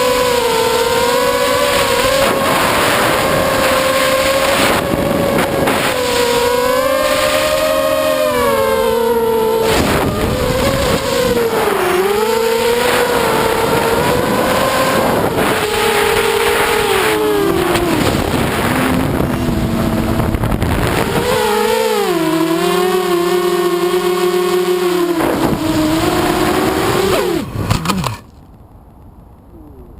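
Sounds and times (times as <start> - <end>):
drone motors whining: 0.0 - 28.4.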